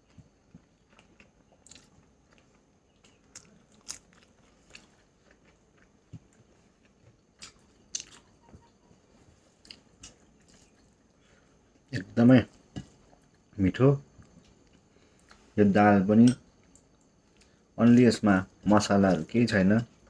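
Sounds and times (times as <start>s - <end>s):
person chewing crunchy food: 0.0s - 15.6s.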